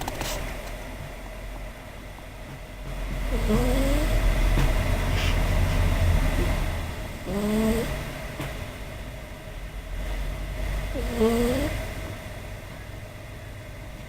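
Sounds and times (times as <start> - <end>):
cat snoring: 3.3 - 4.2, 7.2 - 8.1, 10.9 - 11.9.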